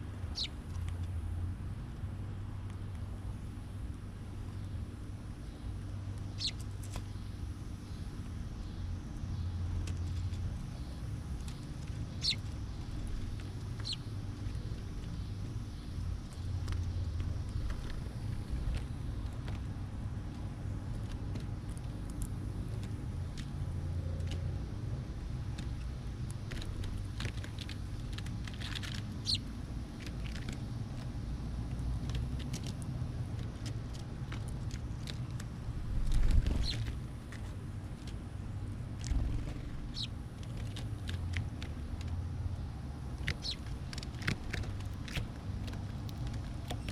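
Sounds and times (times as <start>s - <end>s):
low background rumble: 0.0s - 46.9s
small birds chirping: 0.3s - 0.8s, 4.4s - 19.9s, 26.6s - 31.1s, 36.1s - 37.0s, 39.5s - 46.9s
high bird chirps: 6.4s - 6.6s, 12.1s - 12.4s, 43.4s - 43.6s.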